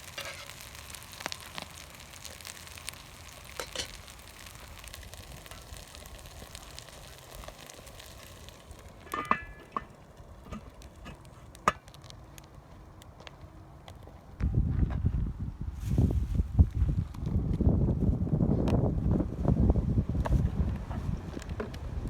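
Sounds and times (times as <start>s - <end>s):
food sizzling in a pan: 0.0s - 9.4s.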